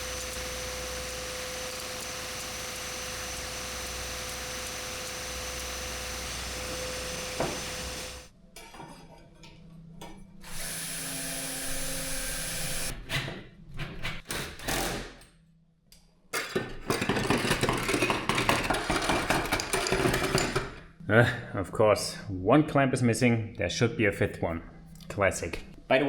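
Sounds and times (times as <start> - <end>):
workshop tool noise: 0.0 - 15.2, 16.4 - 20.8
clicking and clattering: 16.4 - 20.8.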